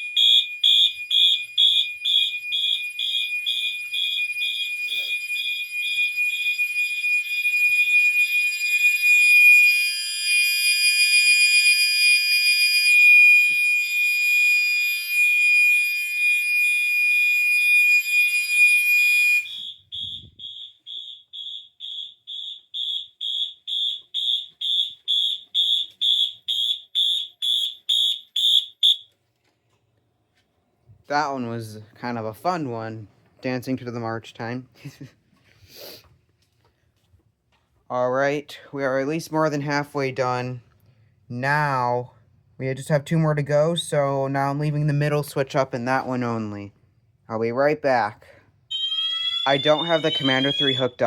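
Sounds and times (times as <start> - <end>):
pulsing fire alarm horn beeps: 0.0 - 29.1, 48.7 - 51.0
steady fire alarm horn tone: 0.0 - 29.1, 48.7 - 51.0.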